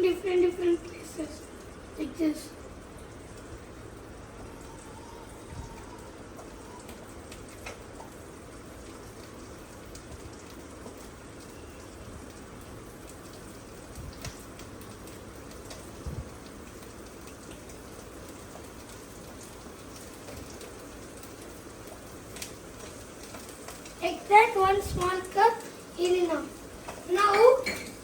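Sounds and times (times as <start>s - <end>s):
omelette sizzling in frying pan: 0.0s - 28.0s
light clicks and taps: 14.1s - 15.9s.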